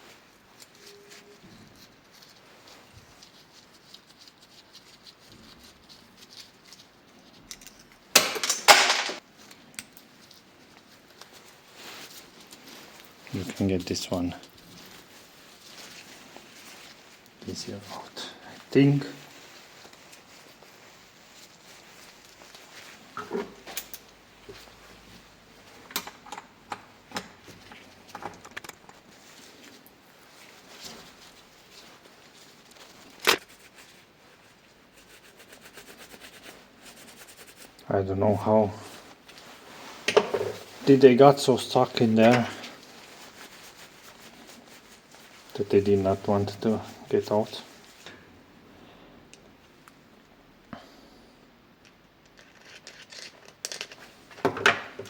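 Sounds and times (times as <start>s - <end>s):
small metal parts clicking: 52.3s - 54.0s.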